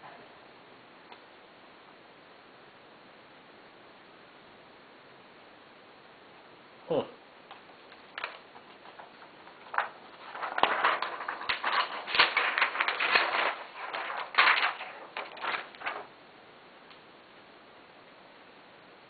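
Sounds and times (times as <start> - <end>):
packaging rustling: 7.8 - 16.2.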